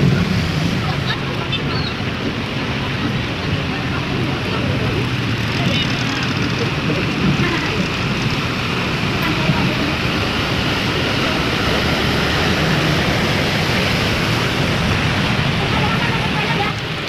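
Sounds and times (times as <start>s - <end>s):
heavy rain: 0.0s - 17.0s.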